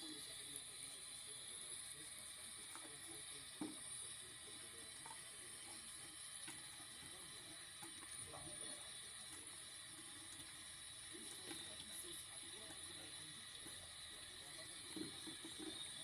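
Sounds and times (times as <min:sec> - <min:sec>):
washing machine water sloshing: 0:05.0 - 0:16.0.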